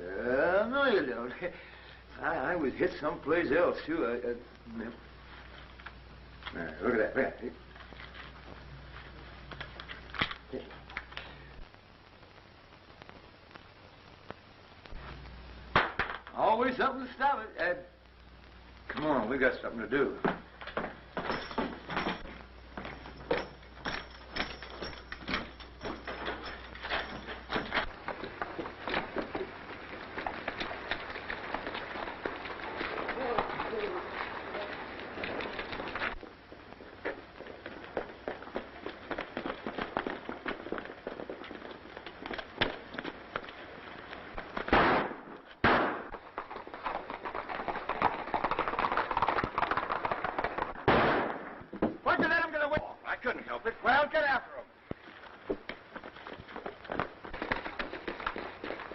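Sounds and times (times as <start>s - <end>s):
galloping horses hoofbeats: 18.9s - 50.9s, 54.8s - 58.9s
echoing gunshots: 44.7s - 46.2s, 50.8s - 51.6s
irregular knocks and thuds: 51.6s - 52.9s.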